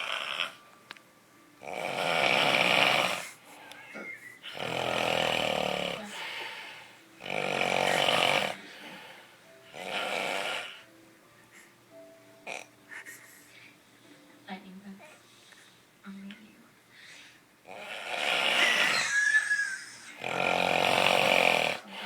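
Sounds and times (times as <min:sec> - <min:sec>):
person snoring loudly: 0:00.0 - 0:00.6, 0:01.6 - 0:03.4, 0:04.5 - 0:06.4, 0:07.2 - 0:09.0, 0:09.7 - 0:10.8, 0:17.7 - 0:22.0.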